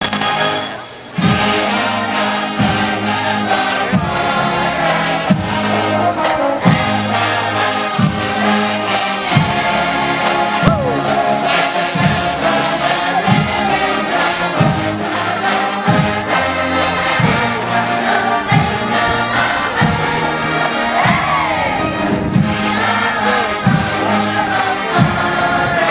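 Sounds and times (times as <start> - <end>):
marching band brass playing: 0.0 - 25.9
heavy low drum beat: 6.6 - 25.9.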